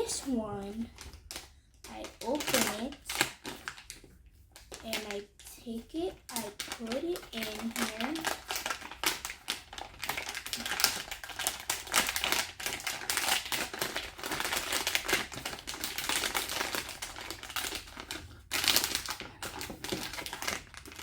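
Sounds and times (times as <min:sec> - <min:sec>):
plastic bag crinkling: 0:00.0 - 0:21.0.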